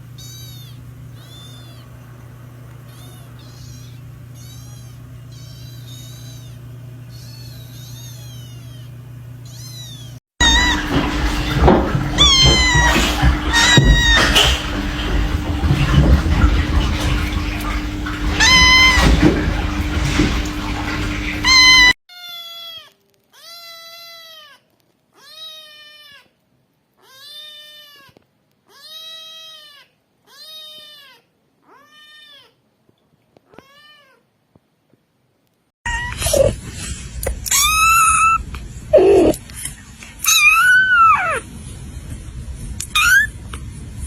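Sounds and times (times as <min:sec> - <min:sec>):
kittens meowing: 0:00.2 - 0:02.0, 0:02.8 - 0:14.7, 0:18.2 - 0:19.3, 0:21.4 - 0:24.6, 0:37.4 - 0:39.4, 0:40.2 - 0:41.5, 0:42.8 - 0:43.4
background noise: 0:22.7 - 0:35.7.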